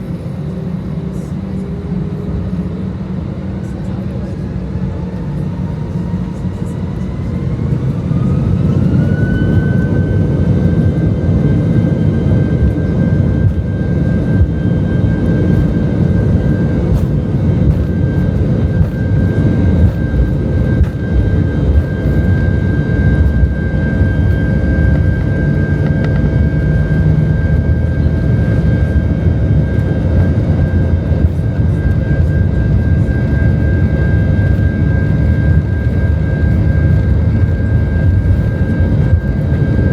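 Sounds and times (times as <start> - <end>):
jet engines whining: 0.0 - 39.9
low rumble of takeoff roll: 0.0 - 39.9.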